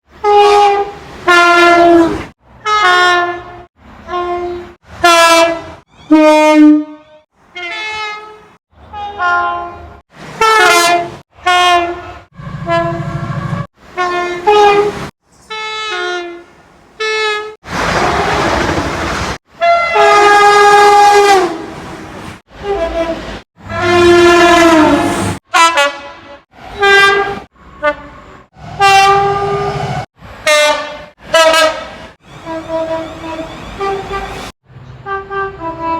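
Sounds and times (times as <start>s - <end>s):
two-tone train horn blasts: 0.2s - 18.4s, 19.6s - 21.8s, 22.5s - 35.9s
rushing noise: 17.6s - 19.4s.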